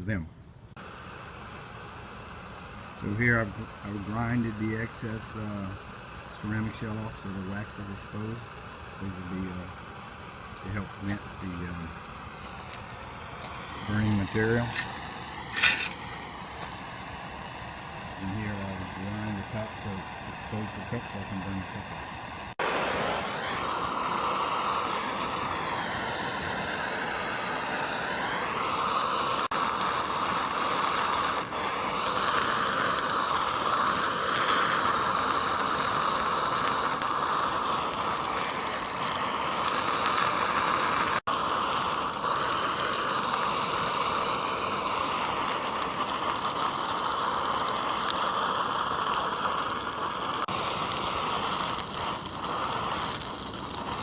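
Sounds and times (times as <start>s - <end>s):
power grinder grinding: 12.4s - 16.9s.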